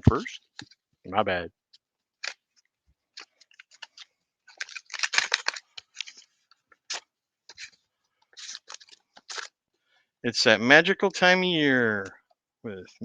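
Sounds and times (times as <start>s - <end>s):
paper and card crinkling: 2.2s - 9.6s.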